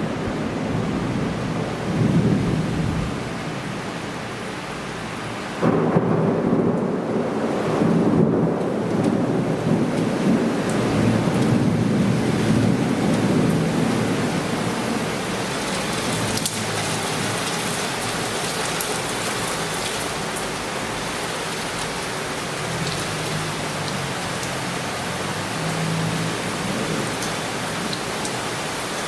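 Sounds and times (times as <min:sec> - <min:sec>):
heavy rain pouring: 0:00.0 - 0:29.0
thunder rumbling: 0:05.6 - 0:20.0.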